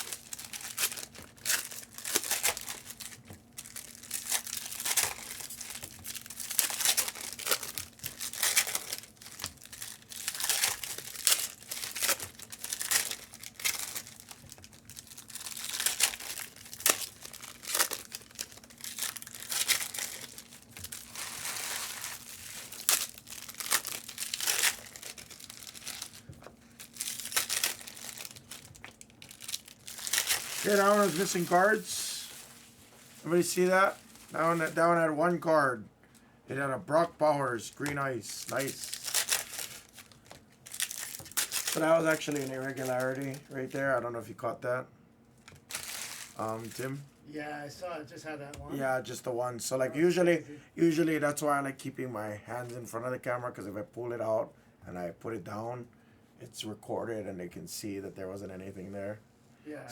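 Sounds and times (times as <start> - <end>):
wrappers crinkling and tearing: 0.0 - 35.7, 36.9 - 44.4, 45.4 - 47.2
faint steady hum: 0.0 - 59.9.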